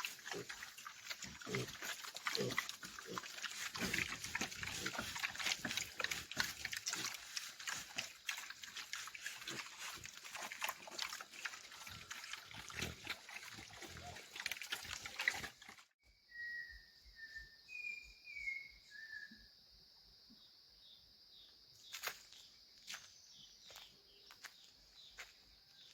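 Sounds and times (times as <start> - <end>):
pigs grunting and snuffling: 0.0 - 15.9
bird whistles: 16.2 - 19.5.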